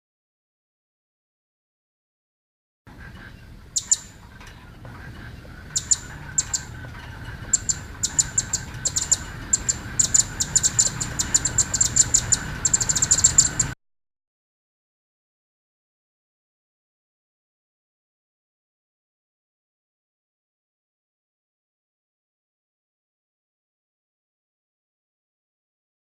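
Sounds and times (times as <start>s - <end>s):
bird chirps: 3.1s - 13.8s.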